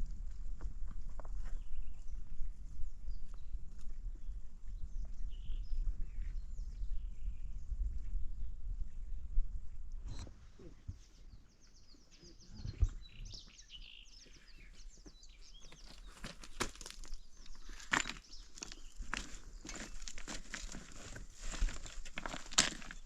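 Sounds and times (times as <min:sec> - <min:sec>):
small birds chirping: 0:01.4 - 0:23.0
crackles and rustles: 0:15.4 - 0:23.0.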